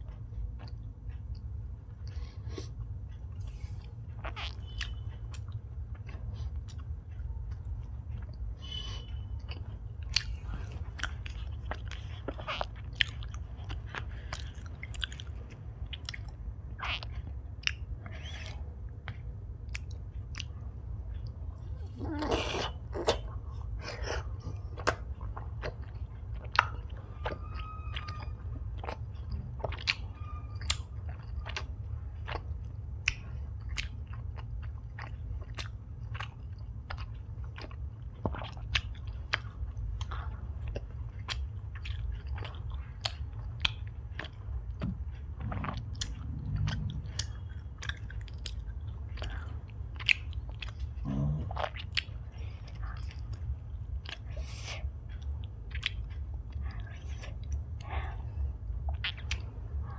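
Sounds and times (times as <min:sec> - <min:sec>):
steady low hum: 0:00.0 - 0:59.9
wet chewing mouth clicks: 0:03.4 - 0:08.4, 0:09.4 - 0:59.9.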